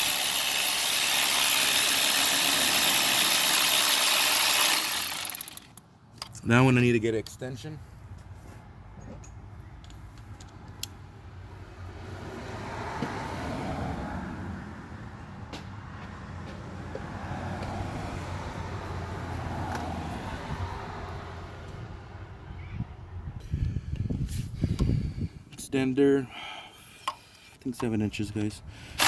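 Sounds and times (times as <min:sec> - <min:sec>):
passing vehicle rumble: 0:11.0 - 0:25.3.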